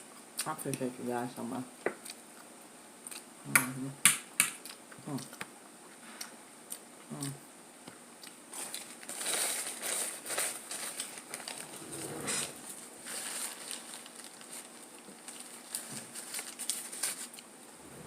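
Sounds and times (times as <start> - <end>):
chewing and lip smacks: 2.0 - 3.3, 6.2 - 8.9.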